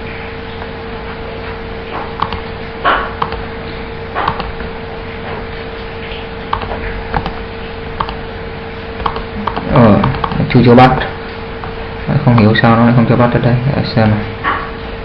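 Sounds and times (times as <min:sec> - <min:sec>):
electrical hum: 0:00.0 - 0:15.0
computer mouse clicks: 0:02.2 - 0:02.5, 0:03.2 - 0:03.4, 0:04.2 - 0:04.6, 0:06.5 - 0:07.4, 0:08.0 - 0:08.2, 0:09.0 - 0:10.4.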